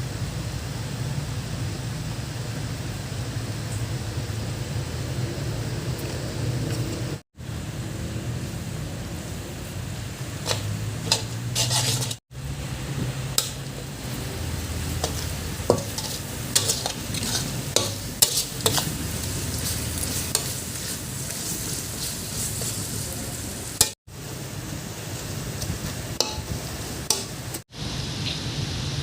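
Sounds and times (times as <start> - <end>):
food sizzling in a pot: 7.4 - 29.0
spoon clinking and scraping pot: 10.4 - 12.2, 14.8 - 21.7.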